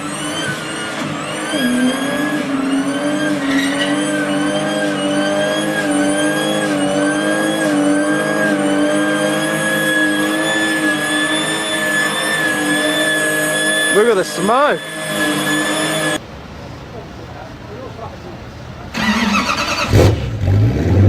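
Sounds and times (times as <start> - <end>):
car engine at high revs: 0.0 - 16.2, 18.9 - 21.0
high-pitched whine: 0.0 - 16.2.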